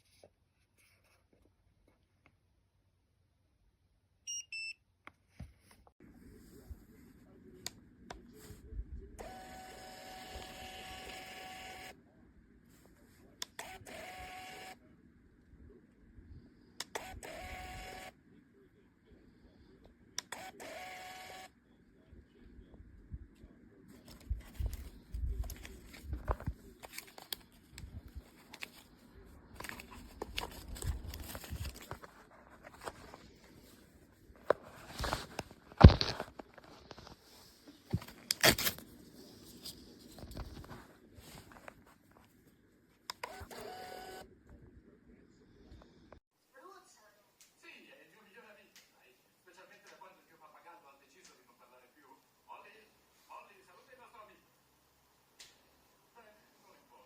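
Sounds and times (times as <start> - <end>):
label printer motor whirring: 9.2 - 11.9, 13.6 - 14.8, 17.0 - 18.1, 20.3 - 21.5, 43.2 - 44.2
knocks and handling noise: 23.9 - 42.5.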